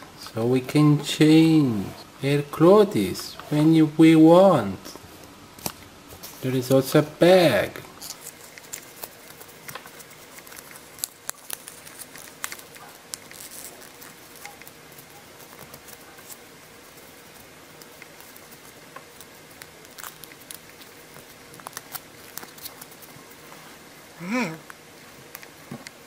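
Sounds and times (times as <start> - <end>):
packaging rustling and crinkling: 7.9 - 23.8.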